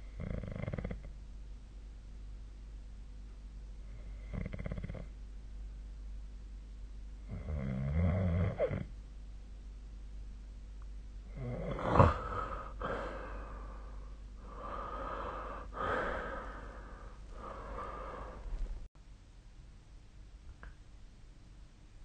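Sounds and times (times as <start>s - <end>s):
person snoring: 0.2s - 1.1s, 11.3s - 18.7s
noisy airy breathing: 11.3s - 18.9s
sharp snort: 11.4s - 12.6s.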